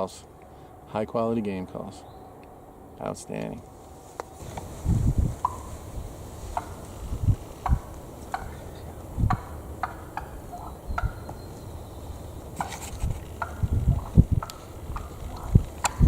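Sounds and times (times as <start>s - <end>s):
turkey hen calling: 5.3s - 16.0s.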